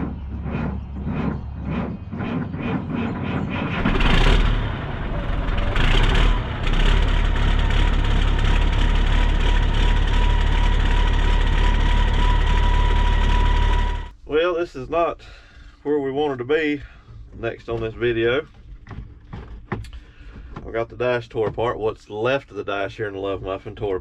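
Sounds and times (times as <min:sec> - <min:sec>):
diesel engine cranking and running: 0:00.0 - 0:14.2.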